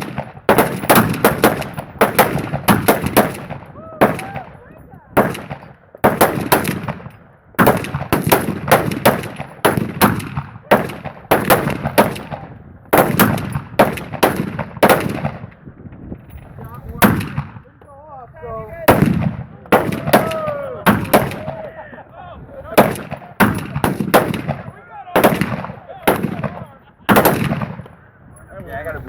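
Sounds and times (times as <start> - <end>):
gunshots with echo: 0.0 - 4.4, 5.1 - 15.5, 18.8 - 21.7, 22.8 - 28.0.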